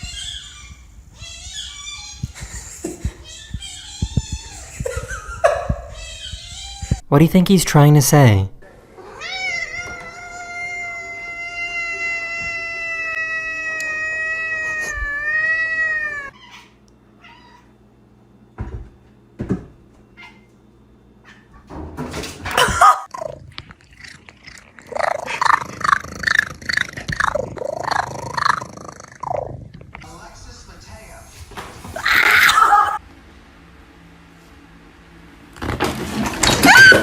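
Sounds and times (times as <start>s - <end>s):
cat meowing: 3.2s - 4.8s, 5.8s - 7.0s, 9.0s - 17.7s, 32.0s - 33.0s.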